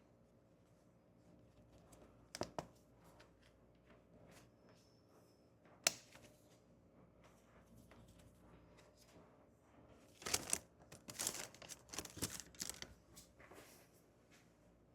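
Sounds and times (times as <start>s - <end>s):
wallet and packaging rustling: 10.1s - 13.0s.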